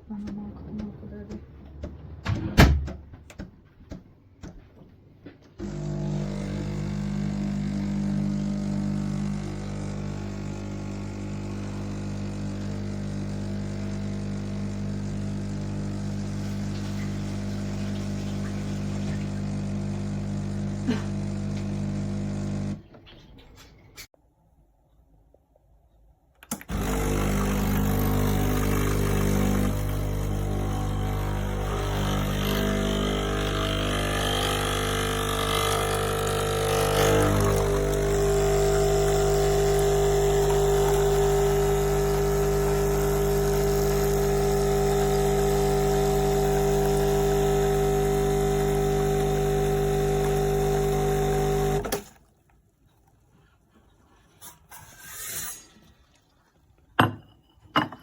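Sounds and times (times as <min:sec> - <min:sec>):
espresso machine buzzing: 0:05.6 - 0:22.8, 0:26.6 - 0:52.0
espresso machine hissing: 0:05.6 - 0:22.8, 0:26.7 - 0:52.0.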